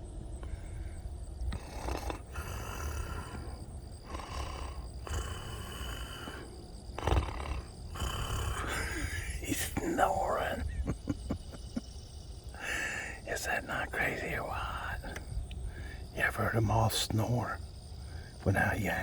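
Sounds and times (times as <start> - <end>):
person mock snoring: 1.5 - 3.4, 4.1 - 11.7.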